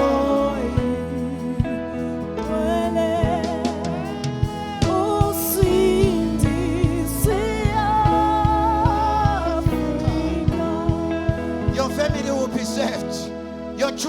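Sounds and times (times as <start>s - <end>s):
person singing gospel: 0.0s - 14.0s
sustained chords: 0.0s - 14.0s.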